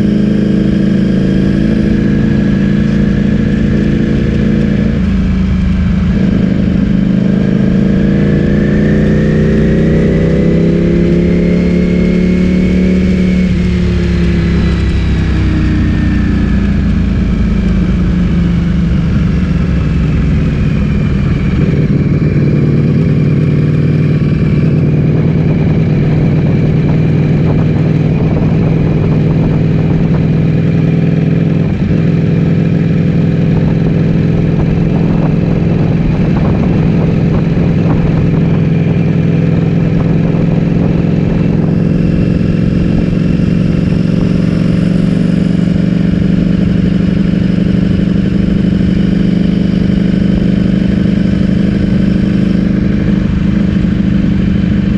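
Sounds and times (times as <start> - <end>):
motorcycle engine running steadily: 0.0 - 54.9.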